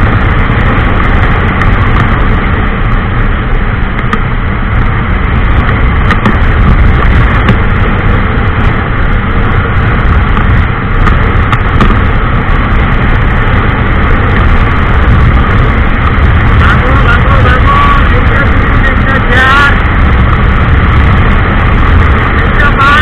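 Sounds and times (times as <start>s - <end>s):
motorcycle engine running at speed: 0.0s - 23.0s
wind rushing on microphone: 0.0s - 23.0s.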